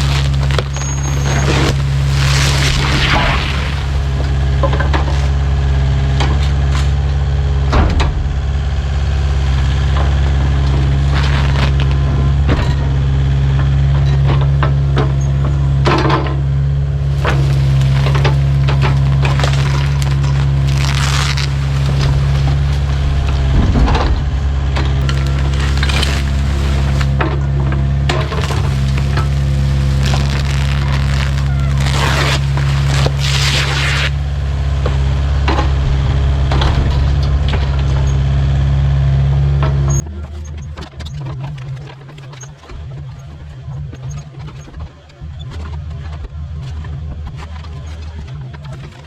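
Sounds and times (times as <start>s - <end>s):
bucket crushing debris: 0.0s - 7.0s, 7.7s - 12.8s, 16.2s - 39.1s
wood cracking and splintering: 0.0s - 40.0s
excavator diesel engine running: 0.0s - 41.4s.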